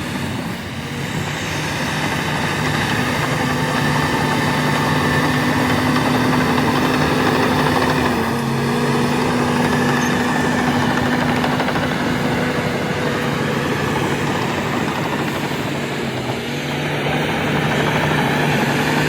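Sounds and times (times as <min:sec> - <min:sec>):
bulldozer diesel engine running: 0:00.0 - 0:19.0.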